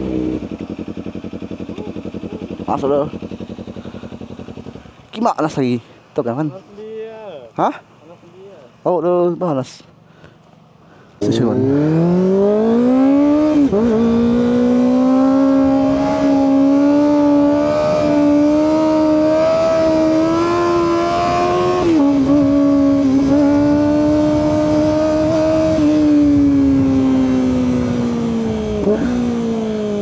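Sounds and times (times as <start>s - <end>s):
motorcycle engine pulling hard: 0.0s - 5.8s, 11.2s - 30.0s.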